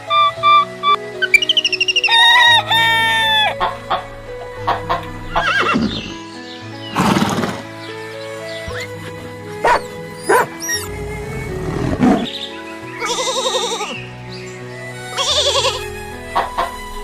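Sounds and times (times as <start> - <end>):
background music: 0.0 - 17.0
harsh animal calls: 0.1 - 6.2, 9.6 - 12.3, 13.0 - 14.0
rooster crowing: 2.0 - 3.8.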